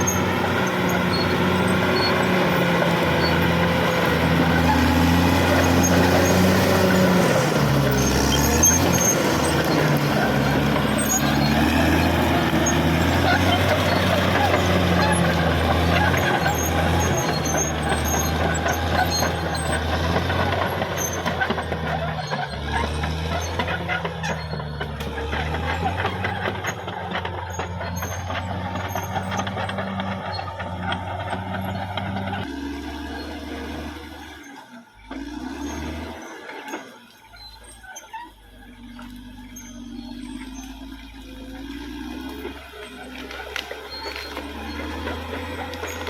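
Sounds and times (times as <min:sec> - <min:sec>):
machine clanks and rattles: 0:00.0 - 0:32.5
bulldozer diesel engine drone: 0:00.0 - 0:46.0.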